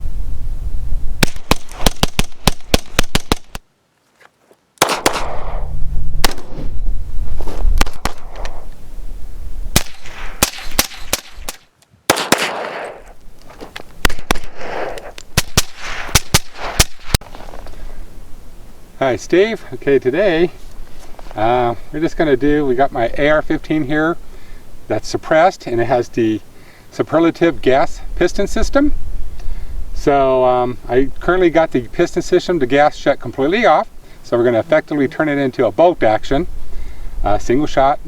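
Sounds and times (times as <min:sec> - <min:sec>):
gusty noise: 0:00.0 - 0:03.6, 0:05.0 - 0:11.6
sharp pops and cracks: 0:01.2 - 0:03.6, 0:07.7 - 0:08.7, 0:09.8 - 0:17.8.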